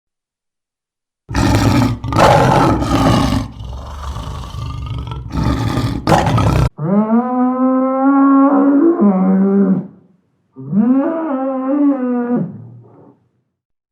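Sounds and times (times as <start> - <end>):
lion roaring: 1.3 - 7.2
cow mooing: 1.3 - 9.5.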